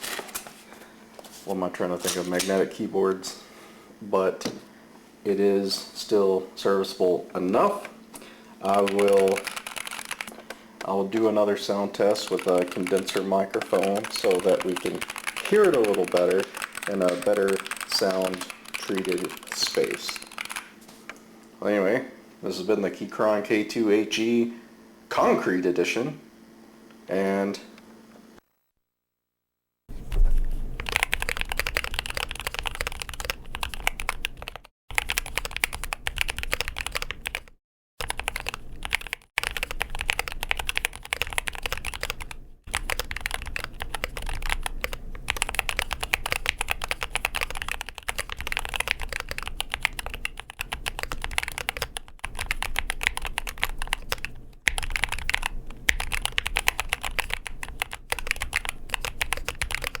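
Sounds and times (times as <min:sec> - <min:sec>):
fast keyboard typing: 0:08.6 - 0:20.8, 0:30.8 - 1:00.0.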